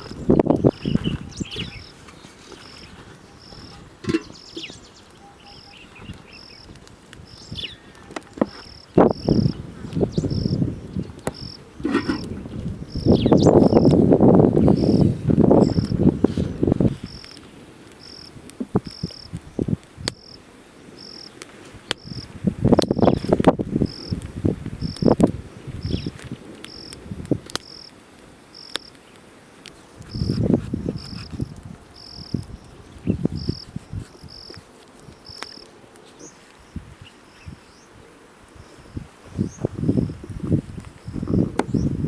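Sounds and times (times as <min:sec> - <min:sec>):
insect chirping: 0:00.0 - 0:02.0, 0:02.6 - 0:16.0, 0:16.7 - 0:20.4, 0:21.0 - 0:21.4, 0:22.0 - 0:27.0, 0:27.6 - 0:29.0, 0:30.1 - 0:35.6.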